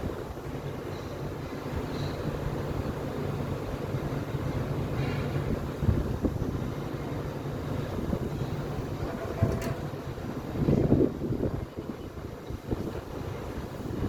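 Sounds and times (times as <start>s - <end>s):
wind buffeting microphone: 5.4s - 14.0s.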